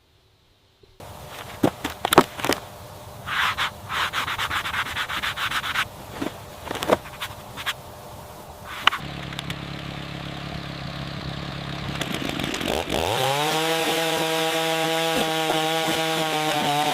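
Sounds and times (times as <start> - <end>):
wood being sanded: 3.2 - 8.0, 11.7 - 16.9
power tool running: 3.6 - 16.9.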